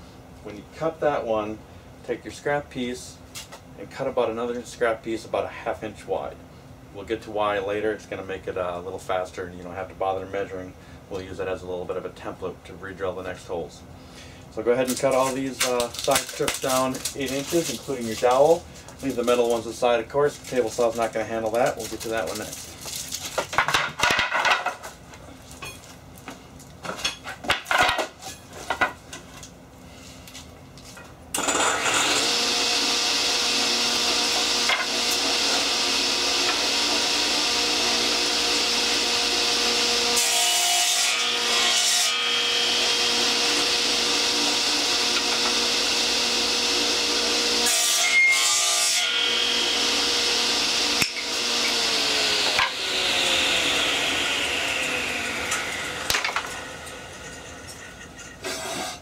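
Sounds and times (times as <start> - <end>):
saw blade cutting wood: 31.4 - 59.0
table saw running: 31.4 - 59.0.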